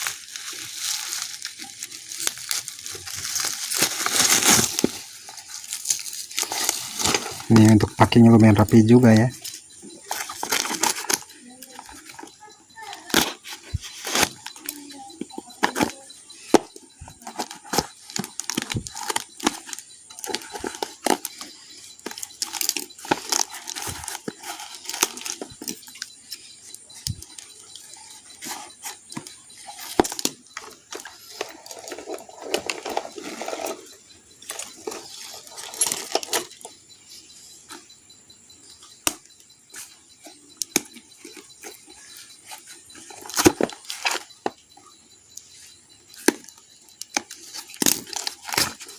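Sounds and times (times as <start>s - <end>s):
packaging rustling: 0.0s - 7.9s, 8.8s - 12.3s, 13.0s - 36.6s, 47.2s - 48.9s.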